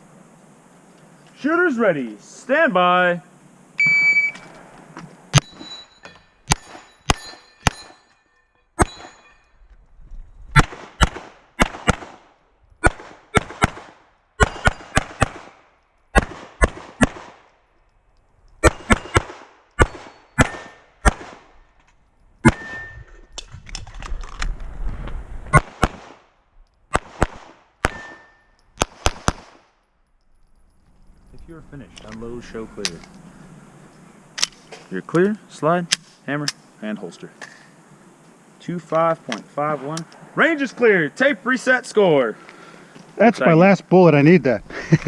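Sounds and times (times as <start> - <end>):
pistol shots: 6.5 - 8.0, 10.5 - 17.5, 18.6 - 21.6, 22.4 - 22.9, 25.5 - 26.3, 26.9 - 29.7.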